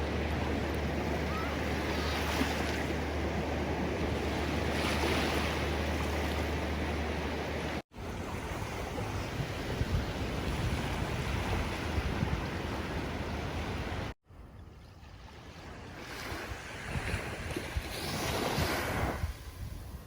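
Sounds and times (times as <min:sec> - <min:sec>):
ocean waves washing: 0:00.0 - 0:14.2.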